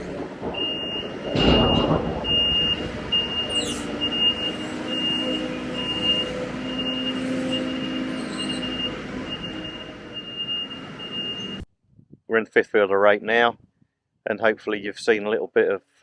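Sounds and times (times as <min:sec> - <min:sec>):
harvester engine running: 0:00.0 - 0:11.6.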